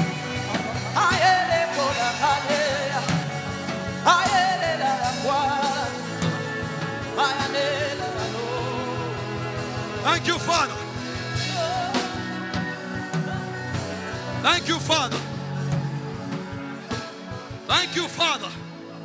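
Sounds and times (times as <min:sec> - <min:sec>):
church worship music with beat: 0:00.0 - 0:19.0
person singing: 0:00.1 - 0:14.8.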